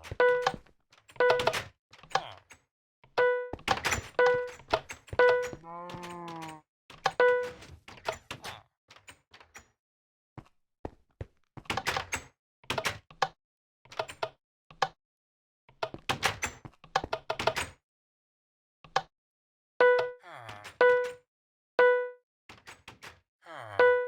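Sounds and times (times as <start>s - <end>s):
knocks and clunks: 0.0s - 0.6s
fire alarm horn: 7.2s - 7.4s.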